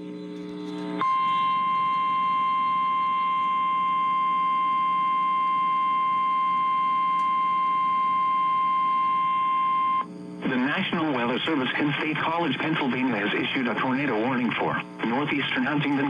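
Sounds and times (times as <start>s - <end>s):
steady alarm tone: 0.8s - 10.1s.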